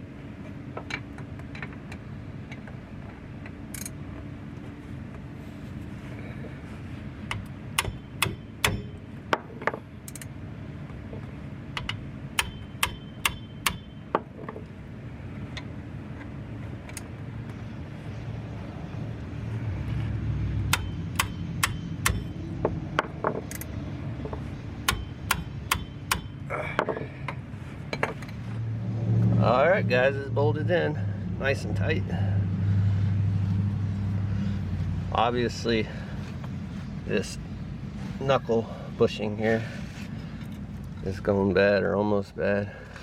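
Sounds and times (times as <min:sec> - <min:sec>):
metallic clicks of hand tools: 0:03.7 - 0:04.0, 0:10.0 - 0:10.3, 0:11.8 - 0:13.9, 0:20.7 - 0:22.3, 0:23.4 - 0:23.7, 0:24.9 - 0:26.4.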